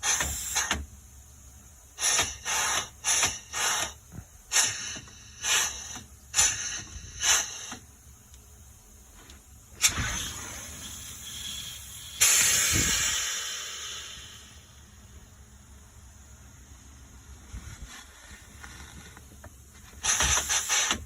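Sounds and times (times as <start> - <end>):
pneumatic air hisses: 0.0 - 1.0, 1.9 - 8.0, 9.7 - 15.2, 19.8 - 21.0.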